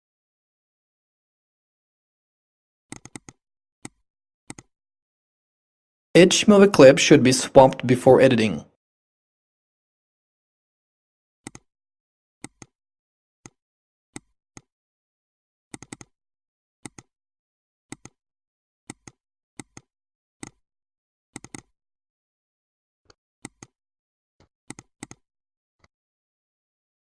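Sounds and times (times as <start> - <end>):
computer mouse clicking: 2.9 - 4.7, 11.4 - 11.7, 12.4 - 12.7, 15.7 - 16.1, 16.8 - 17.1, 17.9 - 18.2, 18.9 - 20.6, 21.4 - 21.7, 23.4 - 23.8, 24.7 - 25.2.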